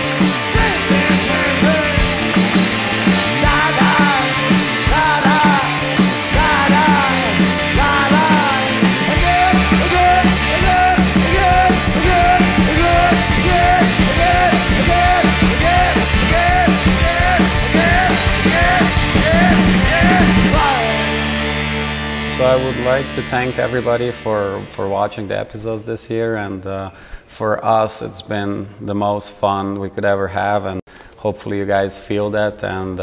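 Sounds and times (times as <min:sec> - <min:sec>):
rock music: 0:00.0 - 0:25.5
bass: 0:00.0 - 0:26.8.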